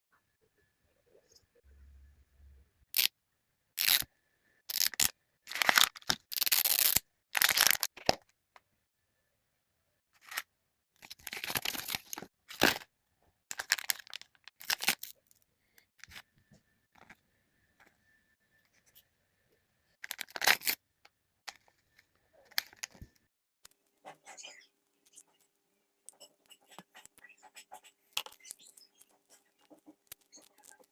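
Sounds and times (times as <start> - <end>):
packaging being torn open: 4.7 - 7.9, 20.1 - 20.8.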